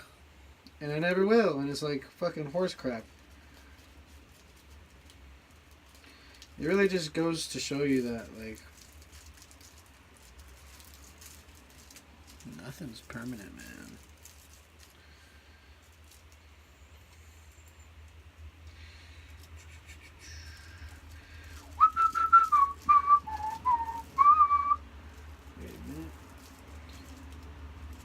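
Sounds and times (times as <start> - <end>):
rustling: 2.4 - 28.0
person whistling a tune: 21.8 - 24.8.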